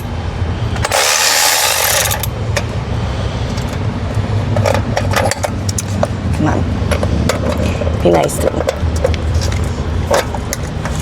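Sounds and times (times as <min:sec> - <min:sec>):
steady low hum: 0:00.0 - 0:11.0
impact wrench: 0:00.8 - 0:02.7.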